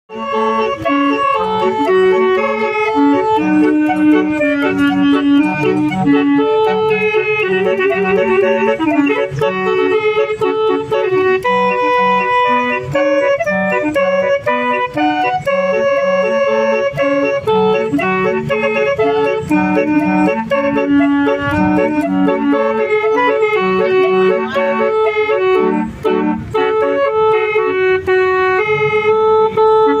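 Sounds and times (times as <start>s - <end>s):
musical bus horn playing a tune: 0.1s - 30.0s.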